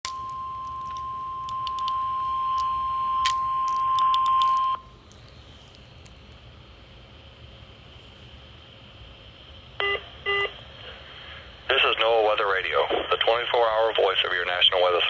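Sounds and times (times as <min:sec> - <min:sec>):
alarm tone beep: 0:00.1 - 0:04.9, 0:09.8 - 0:10.5
faint radio hiss: 0:05.0 - 0:15.0.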